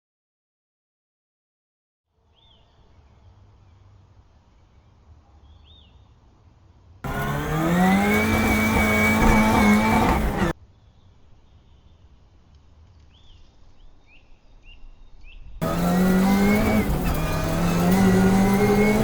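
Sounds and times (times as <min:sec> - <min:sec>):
race car engine revving: 0:07.0 - 0:10.5, 0:15.6 - 0:19.0.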